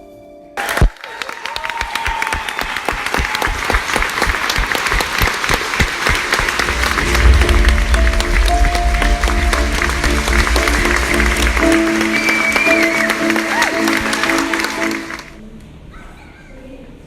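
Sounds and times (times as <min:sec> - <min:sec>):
audience applauding: 0:00.6 - 0:15.4
sudden loud hit: 0:02.9 - 0:13.5
music with deep bass: 0:06.4 - 0:15.3.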